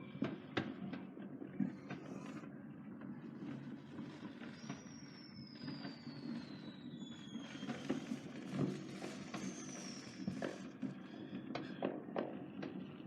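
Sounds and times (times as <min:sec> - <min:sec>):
firework pops and bangs: 0:00.0 - 0:13.0
firework whistles falling in pitch: 0:03.5 - 0:12.5.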